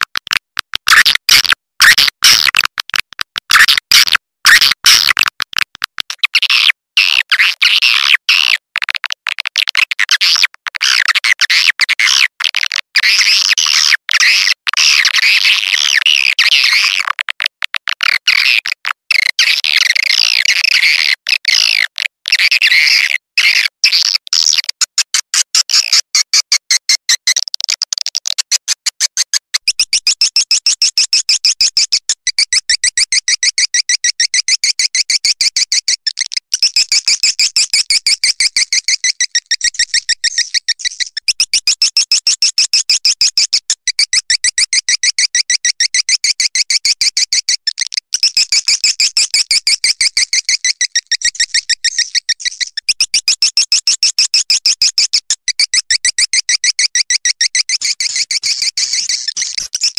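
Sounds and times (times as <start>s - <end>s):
high bird chirps and twittering: 29.7s - 59.9s.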